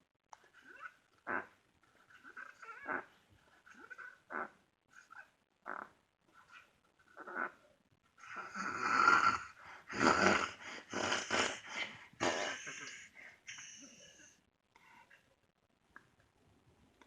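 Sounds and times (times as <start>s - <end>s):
child snoring: 8.3s - 12.6s.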